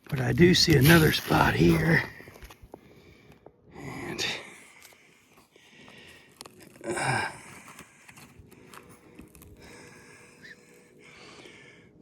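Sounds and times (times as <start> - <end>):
faint clicks and handling noise: 0.0 - 3.5, 4.7 - 10.2.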